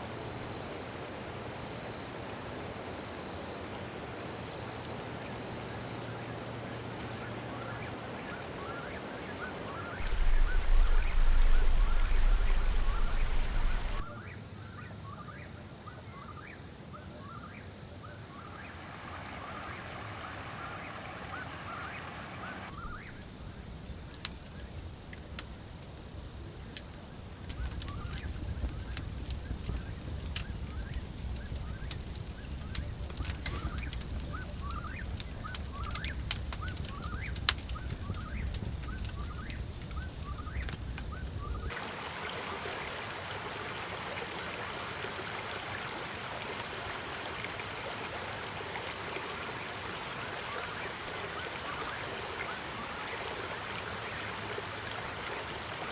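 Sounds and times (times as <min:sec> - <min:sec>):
short bird calls: 0:09.8 - 0:14.1
low rumble: 0:10.0 - 0:14.1
stream rushing: 0:10.0 - 0:14.1, 0:18.7 - 0:22.8, 0:41.7 - 0:55.9.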